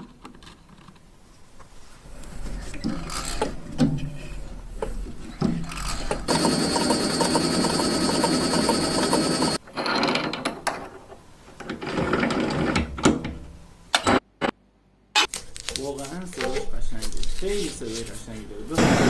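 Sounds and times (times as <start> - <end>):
electric peeler whirring and ticking: 5.7 - 9.6.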